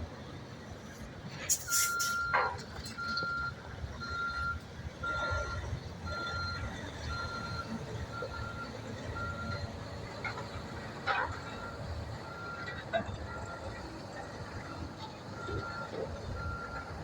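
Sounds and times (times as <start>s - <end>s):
wind: 0.0s - 17.0s
reversing alarm beeping: 1.6s - 9.6s, 15.3s - 17.0s.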